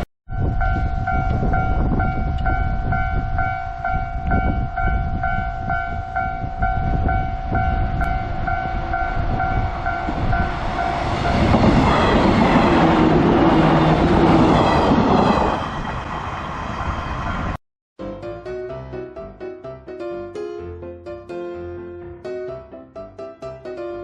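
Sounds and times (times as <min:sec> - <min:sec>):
level-crossing bell dinging: 0:00.3 - 0:11.6
train passing on rails: 0:00.3 - 0:17.6.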